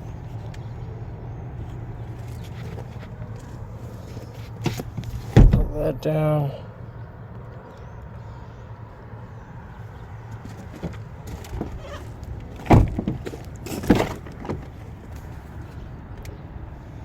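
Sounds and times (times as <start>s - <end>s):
steady low rumble: 0.0s - 10.4s
loud thumps: 4.6s - 6.1s, 12.6s - 14.7s.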